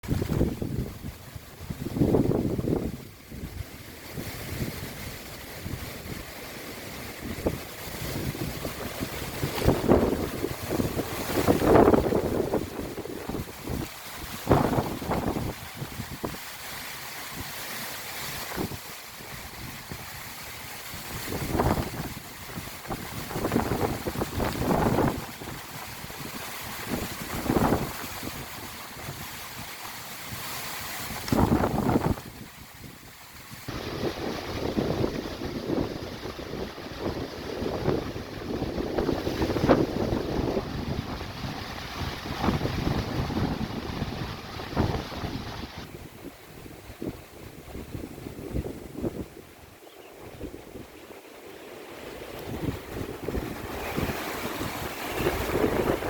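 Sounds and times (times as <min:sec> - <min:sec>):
tent fabric flapping: 0:00.0 - 0:16.5
gusty wind buffeting microphone: 0:00.0 - 0:56.0.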